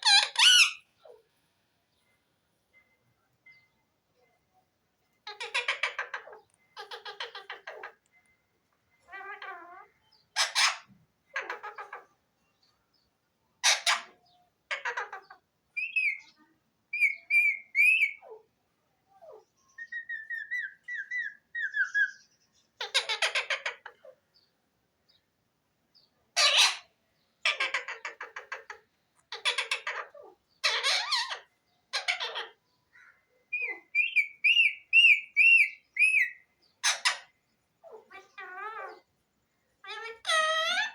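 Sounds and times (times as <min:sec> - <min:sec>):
parrot harsh squawks: 0:00.0 - 0:01.2, 0:05.3 - 0:08.0, 0:09.1 - 0:12.1, 0:13.6 - 0:16.2, 0:22.8 - 0:24.2, 0:26.4 - 0:32.6, 0:33.5 - 0:39.0, 0:39.8 - 0:40.9
parrot whistled chirps: 0:16.9 - 0:18.2, 0:33.5 - 0:36.4.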